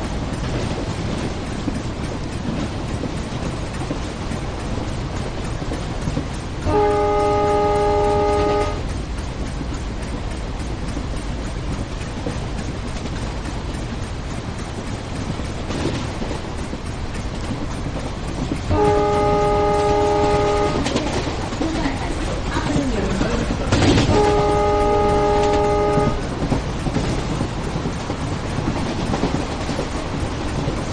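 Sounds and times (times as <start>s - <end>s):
running train noise: 0.0s - 30.9s
train horn blasts: 6.6s - 8.8s, 18.7s - 21.2s, 23.7s - 26.3s.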